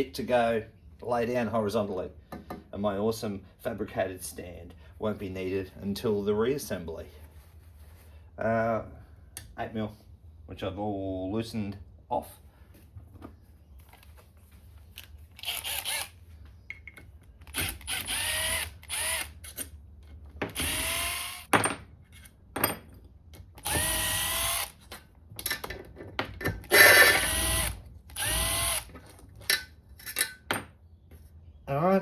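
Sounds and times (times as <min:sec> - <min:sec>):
power drill spinning bolts: 0:15.0 - 0:16.2, 0:17.4 - 0:19.7, 0:20.5 - 0:21.5, 0:23.6 - 0:24.9, 0:26.6 - 0:29.2.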